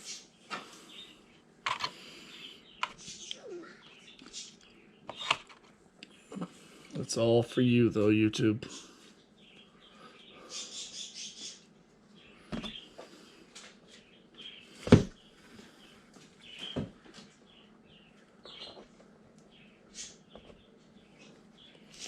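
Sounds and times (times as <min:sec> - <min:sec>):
clicks and knocks of plastic parts: 0:01.6 - 0:02.0
faint bird chirps: 0:08.6 - 0:13.0, 0:13.8 - 0:18.9, 0:19.5 - 0:22.0.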